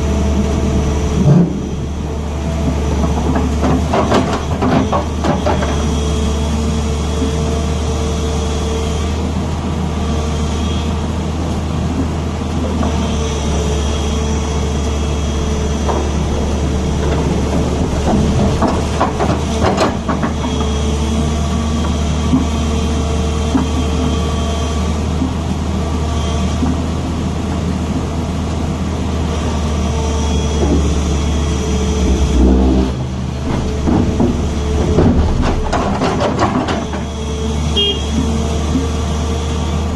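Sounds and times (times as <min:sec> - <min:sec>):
excavator diesel engine drone: 0:00.0 - 0:39.9
short knocks: 0:30.5 - 0:37.1
high whine: 0:31.6 - 0:33.9.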